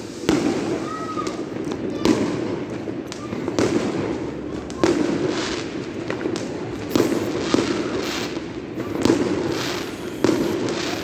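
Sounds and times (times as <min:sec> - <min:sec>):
fireworks crackling: 0:00.0 - 0:11.0
fireworks bangs: 0:00.3 - 0:02.7, 0:04.8 - 0:11.0.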